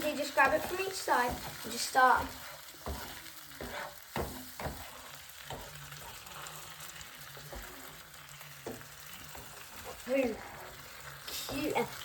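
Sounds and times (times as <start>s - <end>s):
egg sizzling in frying pan: 0.0s - 12.0s
utensil scraping pan: 0.0s - 12.0s.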